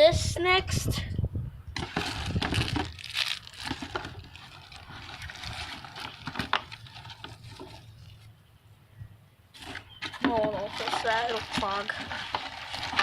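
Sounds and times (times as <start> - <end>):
rustling: 1.8 - 8.4, 9.5 - 13.0.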